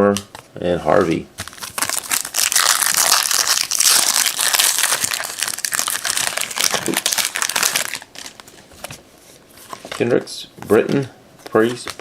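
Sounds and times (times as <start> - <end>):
plastic wrapper crinkling: 1.4 - 9.0.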